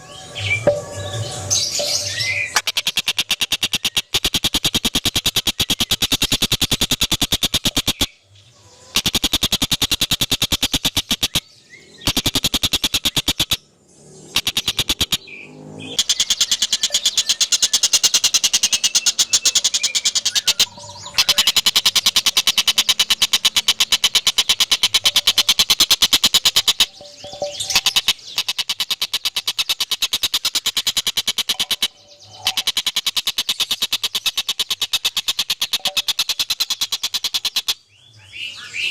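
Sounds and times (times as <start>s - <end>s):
animal calling in pulsing trill: 16.0s - 37.6s.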